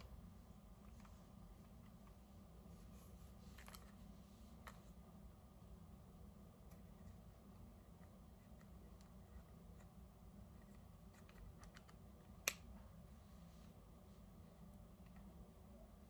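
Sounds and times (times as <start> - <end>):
small parts clicking and tapping: 10.6 - 12.6.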